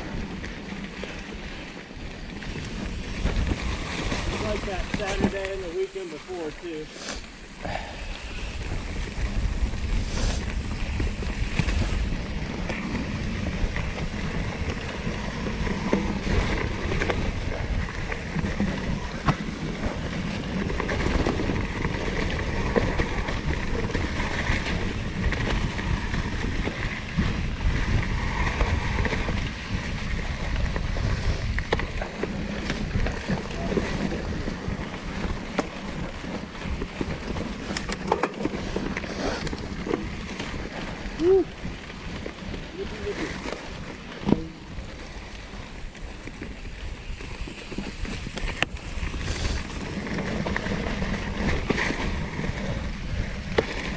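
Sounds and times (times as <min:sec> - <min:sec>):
bike tyres rumbling on dirt: 0:00.0 - 0:53.9
wind buffeting microphone: 0:00.0 - 0:53.9
bike clicks and rattles: 0:08.3 - 0:42.6, 0:43.2 - 0:53.9.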